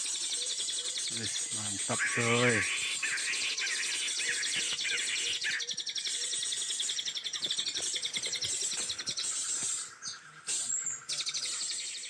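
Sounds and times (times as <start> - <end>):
high pulsing trills: 1.2 - 4.5.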